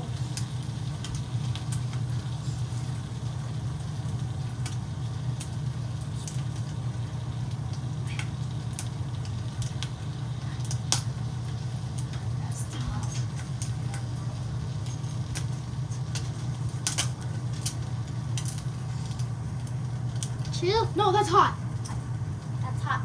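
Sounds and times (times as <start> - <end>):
low mechanical hum: 0.0 - 23.0
sharp clicks and pops: 10.6 - 11.2.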